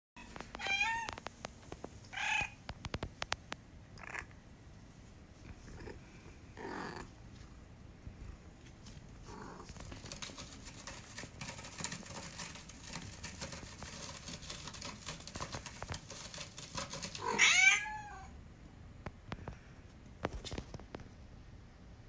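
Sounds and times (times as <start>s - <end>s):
soft rustling: 4.7s - 17.9s.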